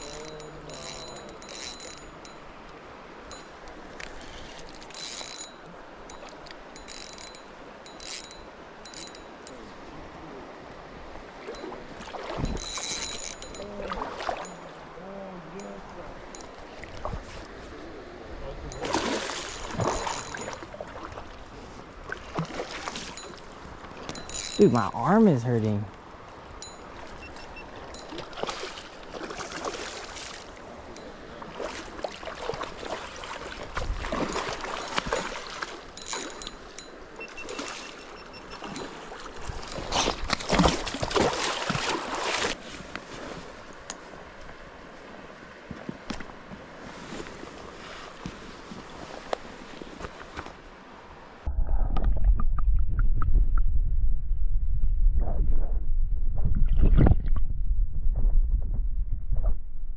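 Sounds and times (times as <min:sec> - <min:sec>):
fishing reel ratcheting: 0:00.0 - 0:02.4, 0:04.8 - 0:06.2, 0:06.8 - 0:09.3, 0:12.4 - 0:13.6, 0:19.4 - 0:20.5, 0:24.1 - 0:24.8, 0:36.0 - 0:36.9
river water rushing: 0:00.0 - 0:51.4.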